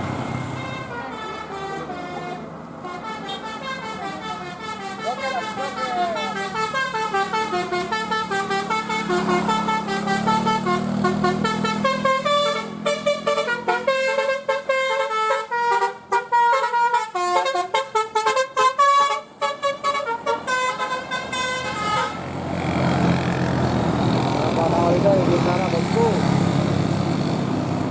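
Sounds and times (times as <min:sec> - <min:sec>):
musical bus horn melody: 0:00.2 - 0:22.3.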